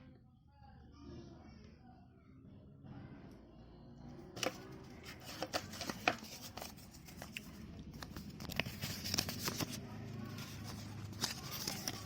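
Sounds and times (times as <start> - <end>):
packaging rustling: 4.4 - 12.0.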